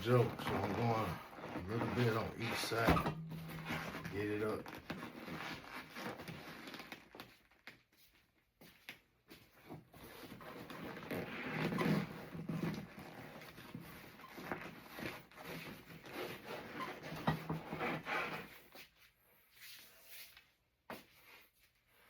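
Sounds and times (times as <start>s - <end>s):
fabric and foam tearing: 0.0s - 2.9s, 3.5s - 7.1s, 10.0s - 18.4s.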